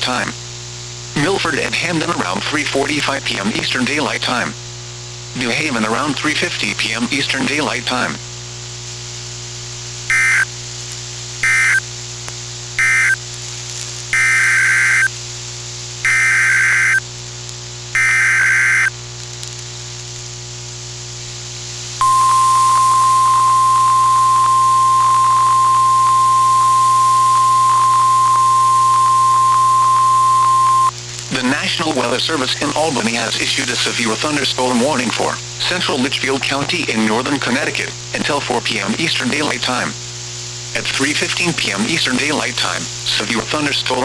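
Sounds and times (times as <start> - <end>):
static hiss: 0.0 - 44.0
screeching data bursts: 10.1 - 10.5, 11.4 - 11.8, 12.8 - 13.2, 14.2 - 15.1, 16.1 - 17.0, 18.0 - 18.9, 22.0 - 31.0
warning alarm tone: 22.0 - 30.9.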